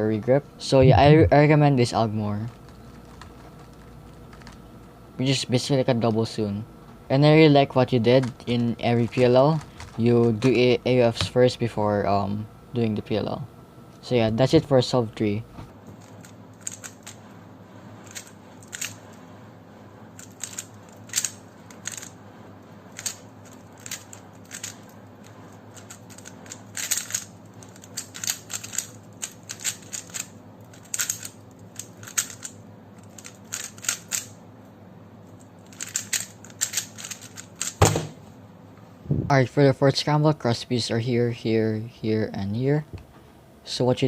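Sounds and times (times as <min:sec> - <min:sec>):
puzzle cube clacking: 0:20.2 - 0:22.1, 0:25.7 - 0:34.3, 0:35.7 - 0:38.0.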